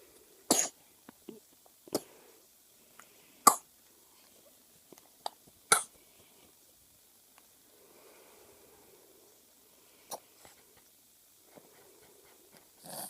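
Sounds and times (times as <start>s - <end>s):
baby coughing: 0.5s - 0.8s, 5.7s - 5.9s.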